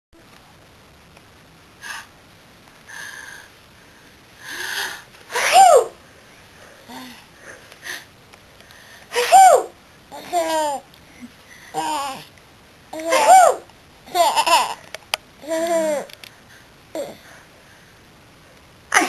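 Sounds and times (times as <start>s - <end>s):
woman sneezing: 5.3s - 6.0s, 9.1s - 9.7s.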